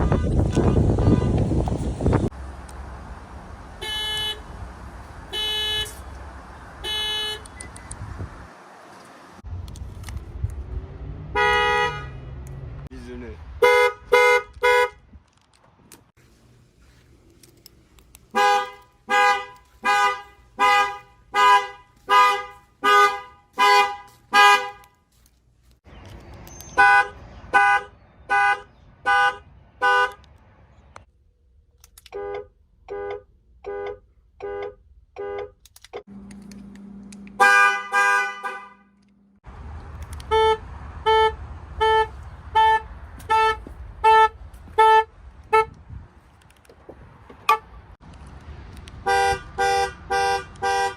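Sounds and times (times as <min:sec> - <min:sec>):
car alarm horn honks: 0:05.3 - 0:06.0, 0:06.8 - 0:07.5, 0:11.4 - 0:12.2, 0:13.6 - 0:15.0, 0:18.4 - 0:24.8, 0:37.4 - 0:38.9, 0:40.2 - 0:45.8.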